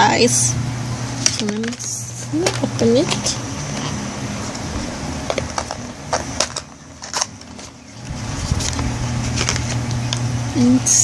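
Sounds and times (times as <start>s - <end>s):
steady low hum: 0.0s - 11.0s
packaging clicks and crinkles: 5.2s - 10.2s.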